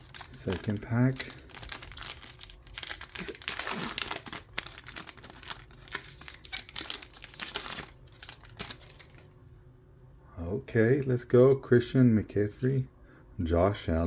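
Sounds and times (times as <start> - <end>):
card pack wrapper crinkling: 0.0 - 9.3.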